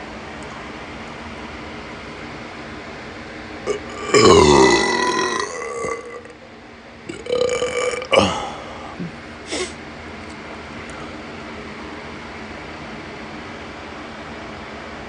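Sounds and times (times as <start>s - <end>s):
person burping: 3.7s - 6.4s, 7.1s - 9.2s.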